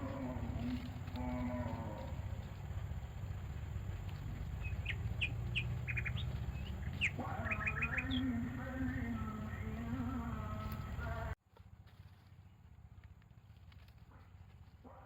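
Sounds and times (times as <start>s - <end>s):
birds chirping: 0.0s - 11.4s
low rumble: 0.0s - 11.4s.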